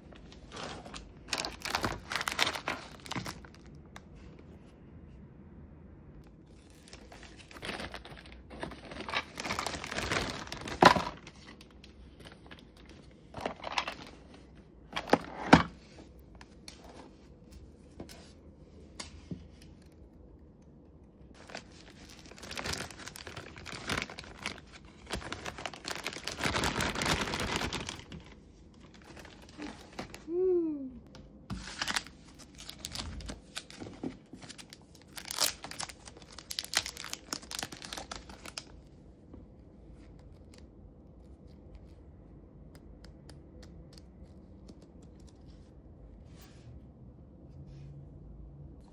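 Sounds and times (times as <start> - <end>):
paper tearing and crumpling: 0.4 - 3.6, 6.6 - 11.4, 21.4 - 30.2, 31.5 - 33.8, 34.5 - 38.7.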